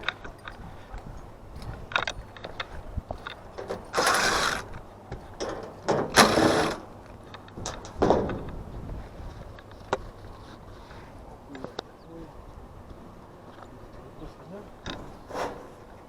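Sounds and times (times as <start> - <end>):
rattling scraping bursts: 3.6 - 4.8, 5.4 - 8.6
clicks and knocks: 5.4 - 8.6.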